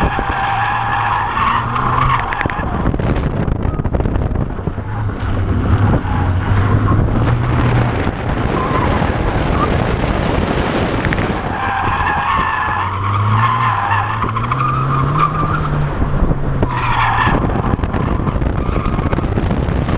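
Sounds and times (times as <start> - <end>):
tyres squealing: 0.0 - 15.8
car engine revving: 0.0 - 19.9
wind and road noise: 0.0 - 19.9.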